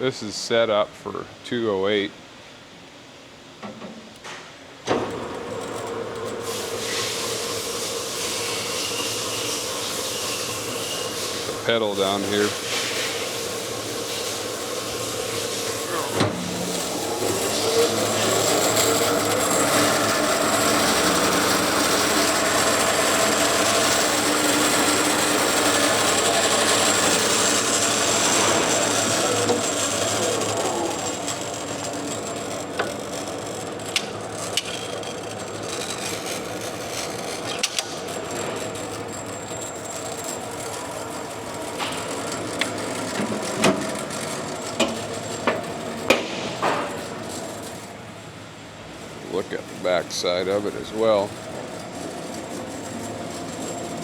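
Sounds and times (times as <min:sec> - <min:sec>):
band saw motor running: 0:05.1 - 0:48.1, 0:49.0 - 0:54.0.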